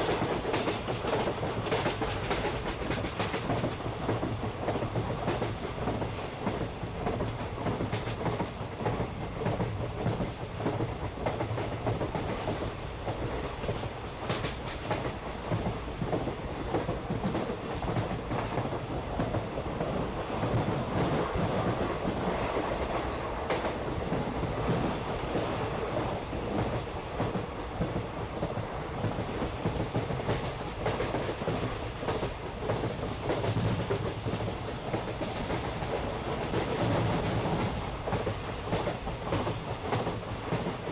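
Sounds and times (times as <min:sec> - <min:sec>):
wheels clacking over rail joints: 0:00.0 - 0:24.9.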